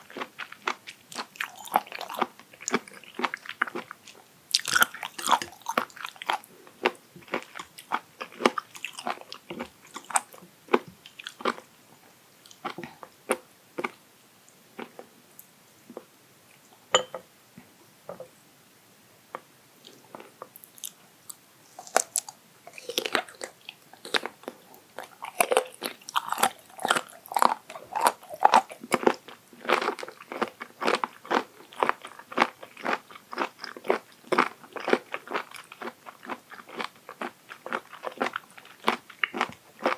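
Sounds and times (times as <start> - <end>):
crunchy biting and chewing: 0.0 - 11.6, 21.8 - 39.9.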